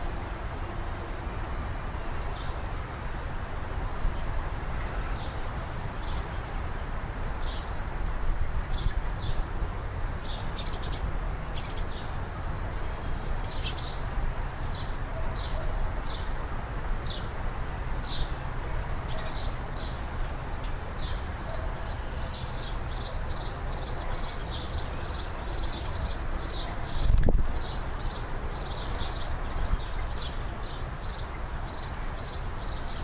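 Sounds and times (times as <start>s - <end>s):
low background noise: 0.0s - 33.0s
small birds chirping: 10.2s - 17.4s, 19.0s - 33.0s.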